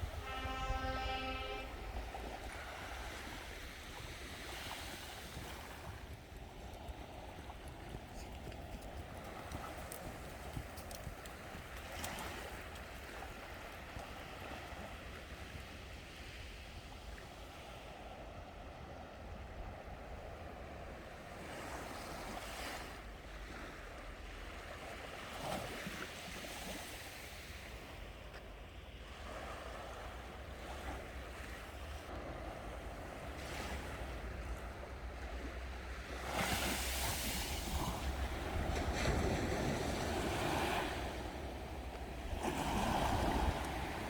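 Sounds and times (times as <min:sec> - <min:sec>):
surf breaking on beach: 0:35.9 - 0:44.0.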